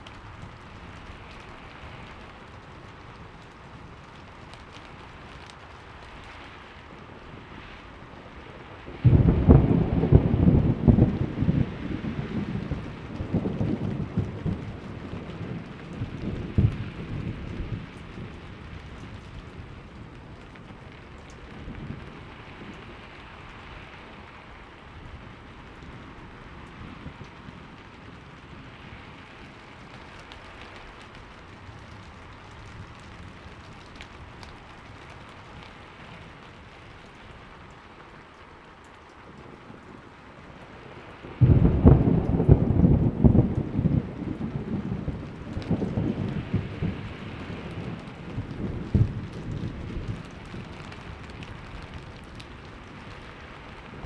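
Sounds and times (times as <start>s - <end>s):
steady rain falling: 0.0s - 54.0s
rolling thunder: 8.8s - 23.7s, 40.9s - 54.0s
sharp thunder clap: 9.0s - 17.9s, 41.4s - 50.1s.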